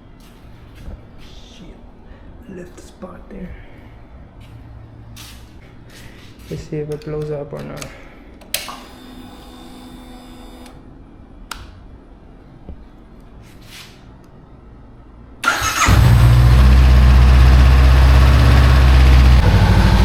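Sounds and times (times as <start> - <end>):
motorcycle engine starting and idling: 15.4 - 20.0.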